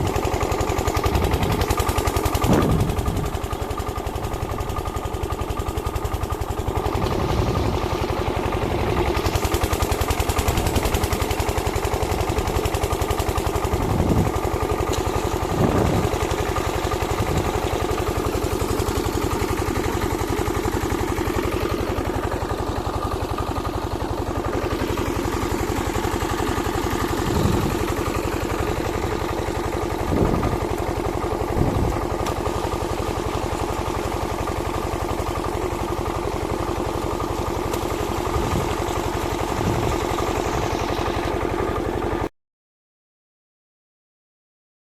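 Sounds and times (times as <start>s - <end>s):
small engine idling: 0.0s - 42.3s
short low thumps: 2.4s - 3.4s.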